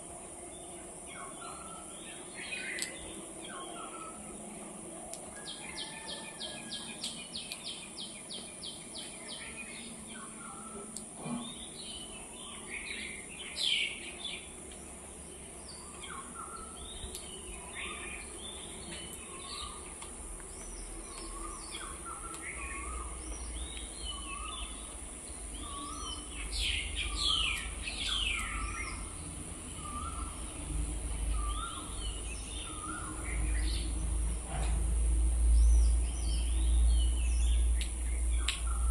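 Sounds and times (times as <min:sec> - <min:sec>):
birds chirping and calling: 0:15.5 - 0:34.7.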